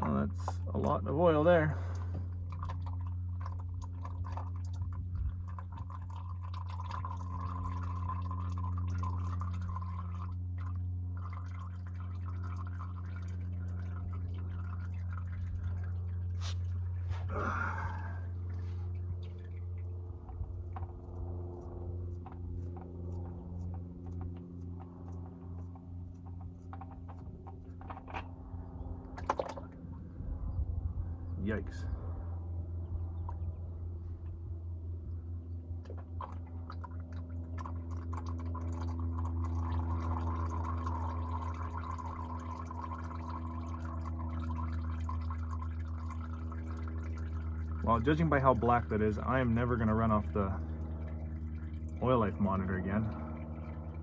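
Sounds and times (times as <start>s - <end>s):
low hum: 0.0s - 54.0s
oil pouring into drain pan: 1.7s - 20.9s, 35.8s - 53.8s.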